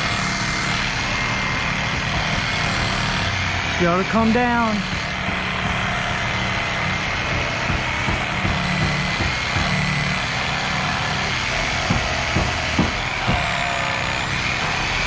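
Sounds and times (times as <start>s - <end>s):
engine running with high whine: 0.0s - 15.0s
short knocks: 4.8s - 10.2s.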